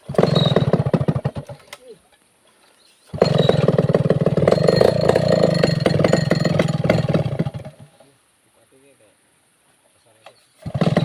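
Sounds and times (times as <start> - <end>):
chainsaw engine running: 0.0 - 1.7, 3.1 - 8.0, 10.6 - 11.0.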